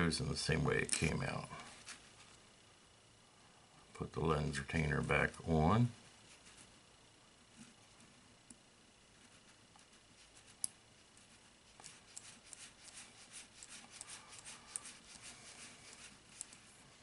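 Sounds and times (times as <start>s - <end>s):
small clicks and scratches: 0.7s - 2.4s, 7.5s - 17.0s.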